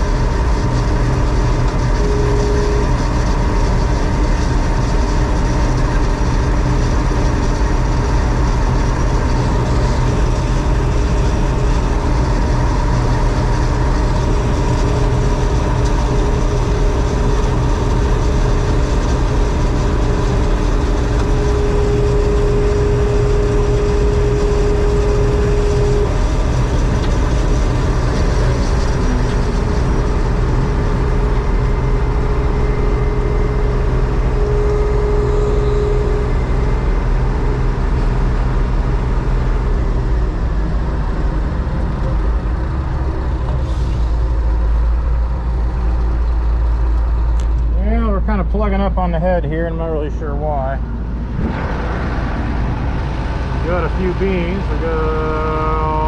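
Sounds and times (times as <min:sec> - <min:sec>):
combine harvester rumbling: 0:00.0 - 0:56.0
faint steady whine: 0:00.0 - 0:56.0.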